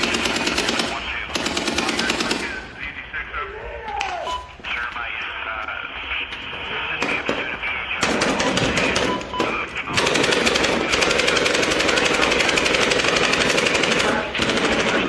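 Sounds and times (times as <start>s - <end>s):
automatic gunfire: 0.0s - 2.7s, 8.0s - 9.2s, 9.9s - 15.0s.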